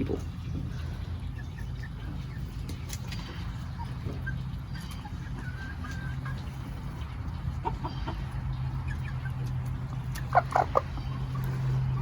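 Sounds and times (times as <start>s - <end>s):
hens clucking: 0.0s - 12.0s.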